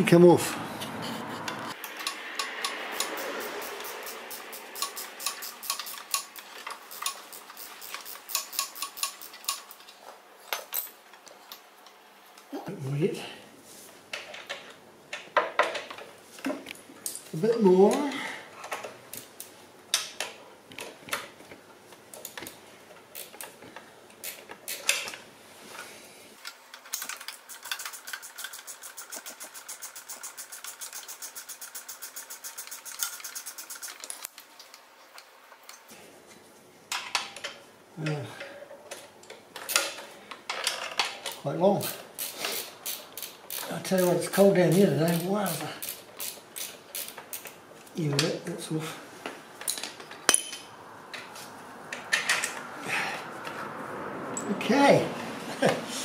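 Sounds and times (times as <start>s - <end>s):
ratchet wrench clicking: 1.7s - 9.9s, 23.2s - 23.5s, 24.2s - 25.2s, 26.9s - 34.3s, 41.8s - 47.6s.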